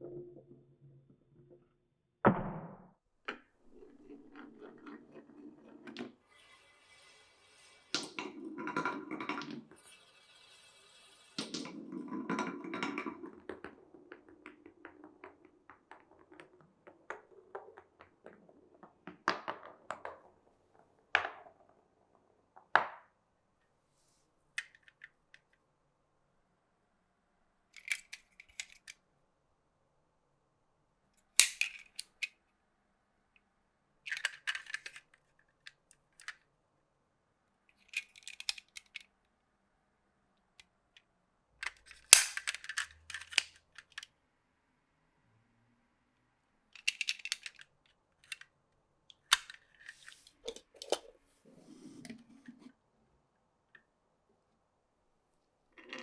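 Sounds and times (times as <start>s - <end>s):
marbles clacking on wood: 3.3s - 23.2s, 31.4s - 32.3s, 41.6s - 44.1s, 46.8s - 48.4s, 55.8s - 56.0s
marbles rolling on wooden tracks: 3.3s - 23.3s, 41.6s - 44.1s, 55.8s - 56.0s.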